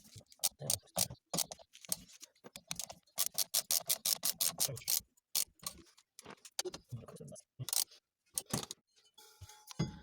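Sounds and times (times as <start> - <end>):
ratchet wrench clicking: 2.8 - 5.5.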